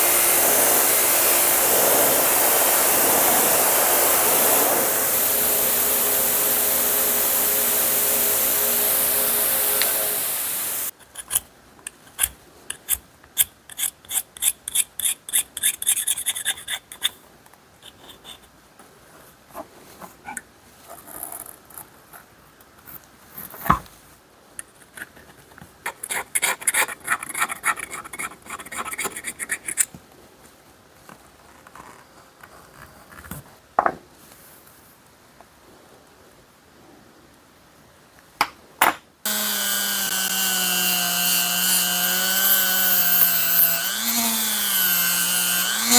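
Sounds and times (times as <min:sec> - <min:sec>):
scrubbing pliers rasping: 0:39.3 - 0:45.9.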